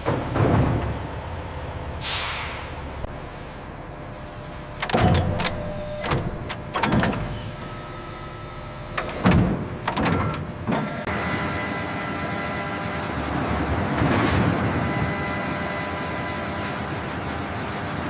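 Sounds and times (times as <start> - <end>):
machinery knocking and clattering: 0.0 - 1.2, 4.8 - 7.5, 8.9 - 11.0
machine hum with high whine: 2.7 - 18.0.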